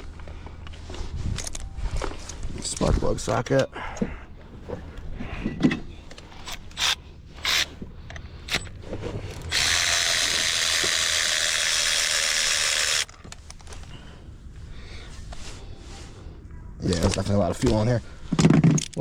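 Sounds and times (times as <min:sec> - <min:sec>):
hand tools clicking and knocking: 0:18.4 - 0:19.0.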